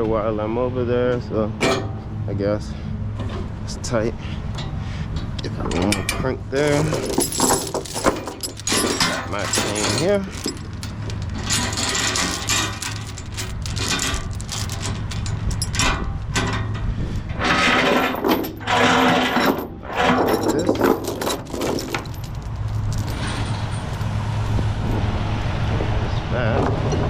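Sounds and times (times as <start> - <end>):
metal chain clanking: 5.6 - 24.2.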